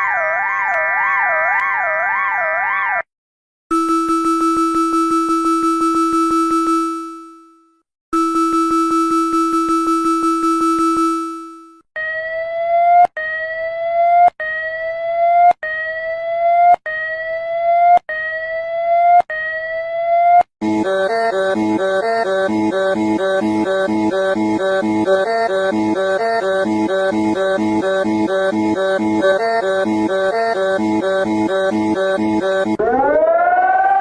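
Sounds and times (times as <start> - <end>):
harsh pulsing buzz tone: 3.7 - 7.3, 20.6 - 32.9
rising whoop tone: 32.8 - 34.0.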